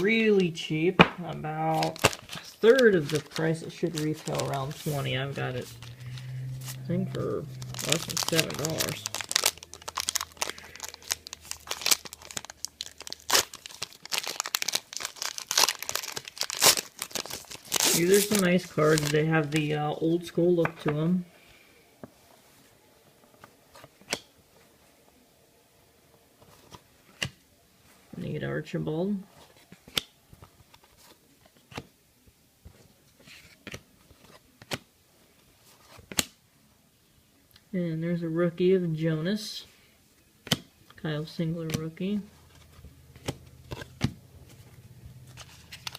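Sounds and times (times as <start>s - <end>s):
cards sliding: 1.7s - 9.6s, 42.5s - 45.9s
plastic wrapping tearing and crinkling: 1.7s - 19.6s, 45.2s - 45.9s
cards snapping: 36.0s - 36.4s, 40.4s - 40.7s, 43.2s - 44.2s.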